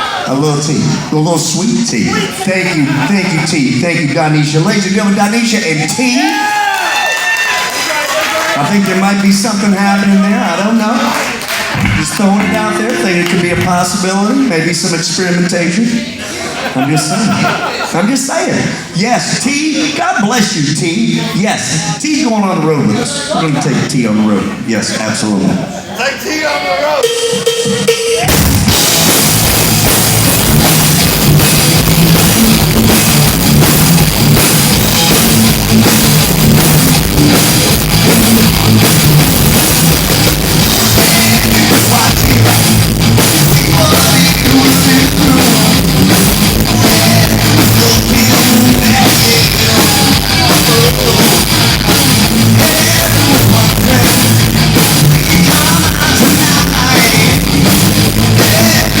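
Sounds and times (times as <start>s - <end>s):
rock band playing: 0.0s - 15.5s, 26.8s - 59.0s
driving drum beat: 11.7s - 14.0s, 27.0s - 59.0s.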